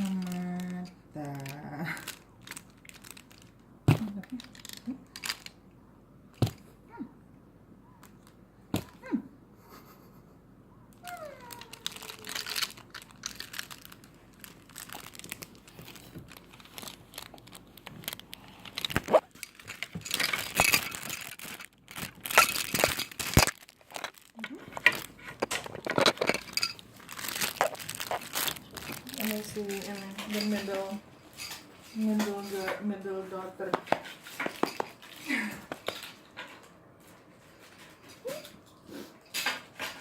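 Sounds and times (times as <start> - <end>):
crinkling and rustling: 0.0 - 5.7, 10.9 - 40.0.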